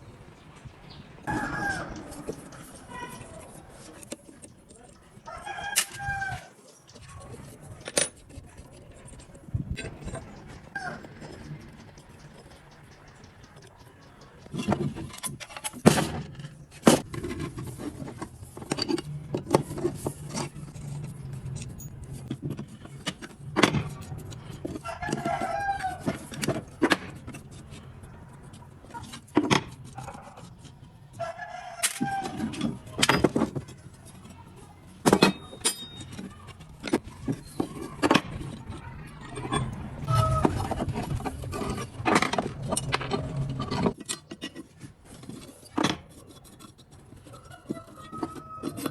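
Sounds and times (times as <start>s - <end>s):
rooster crowing: 1.2s - 4.0s, 5.2s - 6.6s, 10.7s - 11.6s, 24.6s - 27.2s, 31.1s - 33.0s, 38.5s - 43.7s, 47.2s - 48.9s
metallic clanks of tools: 31.8s - 48.9s.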